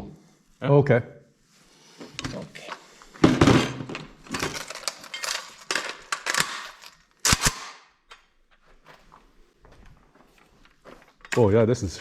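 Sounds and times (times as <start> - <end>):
rifle shots echoing indoors: 6.3 - 8.0.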